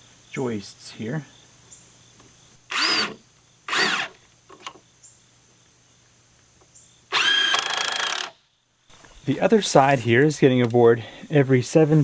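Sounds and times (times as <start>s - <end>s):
impact driver whining: 2.7s - 4.2s, 7.1s - 8.4s.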